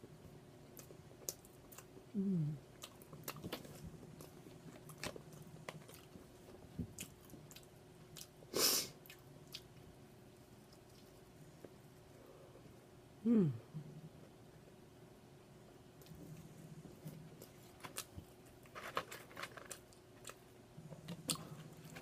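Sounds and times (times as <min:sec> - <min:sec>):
short low vocal sound: 0:02.1 - 0:02.6, 0:13.2 - 0:14.0
chewing crispy fried chicken: 0:02.7 - 0:12.1, 0:16.9 - 0:22.0.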